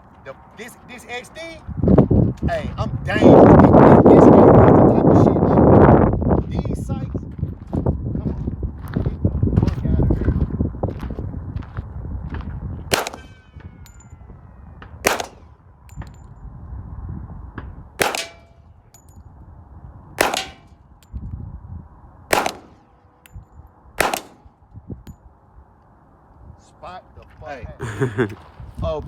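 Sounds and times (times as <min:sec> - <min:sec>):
pistol shots: 0:12.9 - 0:13.5, 0:15.0 - 0:15.6, 0:18.0 - 0:18.5, 0:20.2 - 0:20.7, 0:22.3 - 0:23.0, 0:24.0 - 0:24.5
steel targets pinging: 0:12.9 - 0:14.0, 0:15.1 - 0:16.2, 0:18.0 - 0:19.2, 0:20.2 - 0:20.7, 0:24.0 - 0:24.5.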